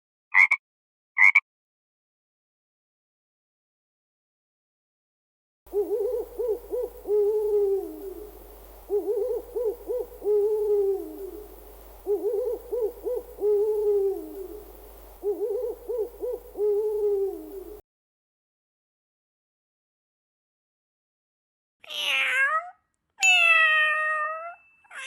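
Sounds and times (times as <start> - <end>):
owl hooting: 5.7 - 17.8.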